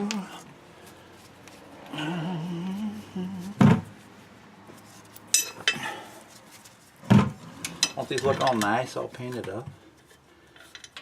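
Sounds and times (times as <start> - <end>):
metal tools clanking: 5.2 - 5.9, 7.6 - 9.5.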